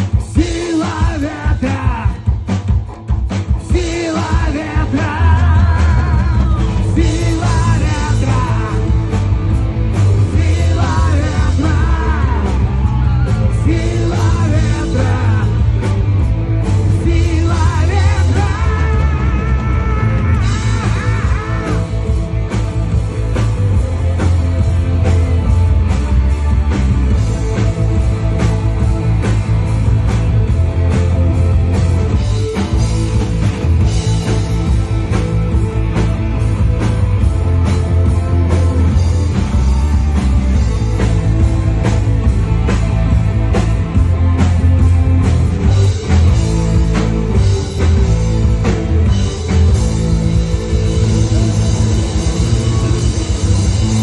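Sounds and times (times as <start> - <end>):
instrumental rock band playing: 0.0 - 54.0
wavering lead melody: 13.2 - 54.0.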